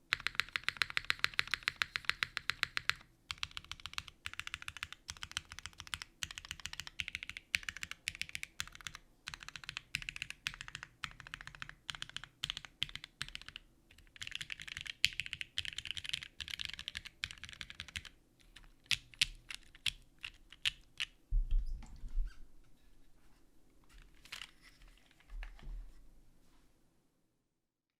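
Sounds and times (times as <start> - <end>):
mechanical keyboard typing: 0.1 - 21.1.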